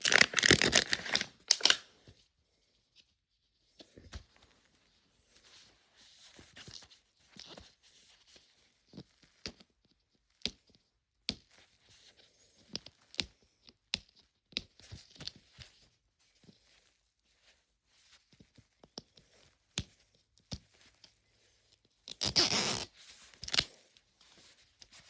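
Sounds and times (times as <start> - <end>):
plastic wrapping crinkling and tearing: 0.0 - 1.8, 22.1 - 23.7.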